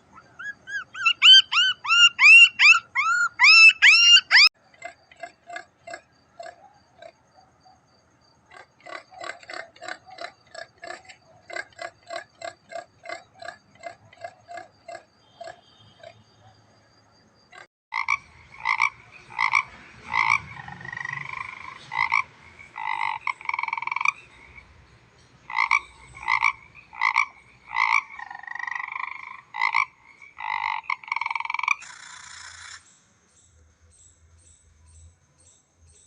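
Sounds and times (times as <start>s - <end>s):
animal calling: 0.0s - 7.2s
trilled animal calls: 0.0s - 7.2s, 8.5s - 16.5s.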